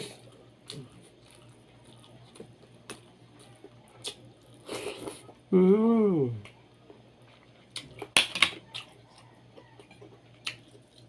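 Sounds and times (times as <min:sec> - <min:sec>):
voiced hum falling in pitch: 0:05.4 - 0:06.5.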